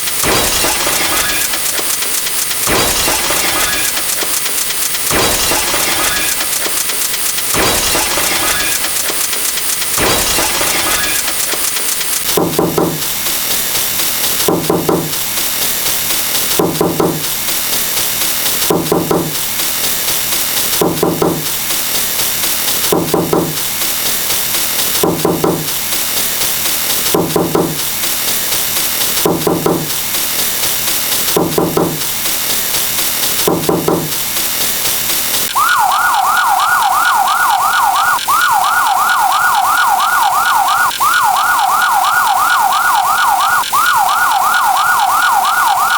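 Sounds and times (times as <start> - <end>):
police siren yelp: 5.1 - 6.9, 7.5 - 9.4, 10.0 - 11.9, 35.5 - 45.9
pitched knock-like sound: 12.3 - 13.1.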